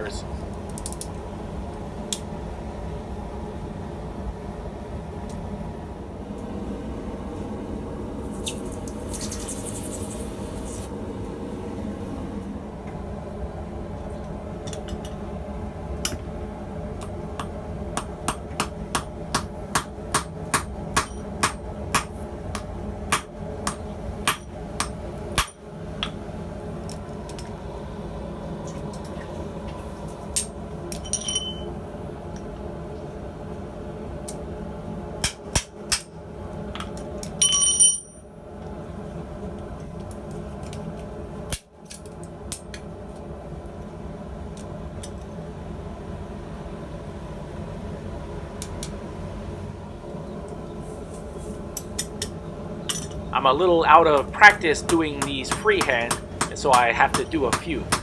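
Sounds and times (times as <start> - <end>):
steady hum: 0.0 - 35.3, 45.4 - 58.0
hammer striking hot steel: 17.0 - 26.2, 35.2 - 36.1, 53.9 - 58.0
steel ringing: 54.0 - 58.0.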